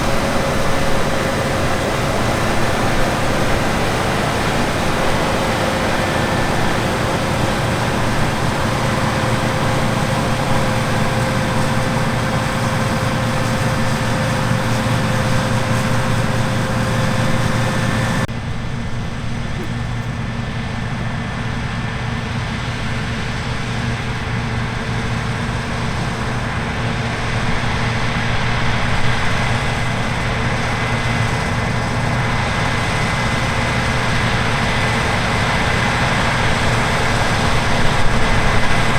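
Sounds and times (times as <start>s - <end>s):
heavy harvest machinery running: 0.0s - 38.9s.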